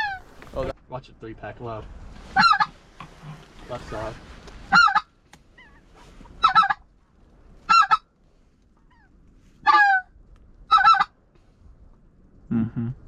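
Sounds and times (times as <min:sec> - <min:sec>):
goose honking: 0:09.6 - 0:10.1.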